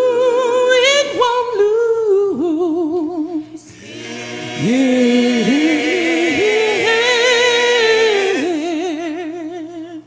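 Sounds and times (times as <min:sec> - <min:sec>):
vocal group singing in harmony: 0:02.6 - 0:10.0.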